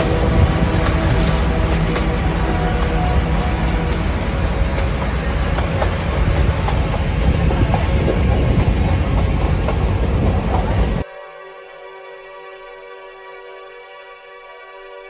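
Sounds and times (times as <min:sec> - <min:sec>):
toy train rumbling on rails: 0:00.0 - 0:11.0
wheels clicking over rail joints: 0:00.0 - 0:11.0.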